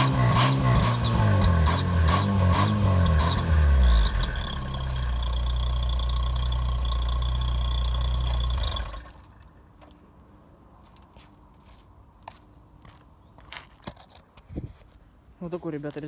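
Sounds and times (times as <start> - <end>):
faint exhaust whistle: 0.0 - 9.0
car engine idling: 0.0 - 9.6.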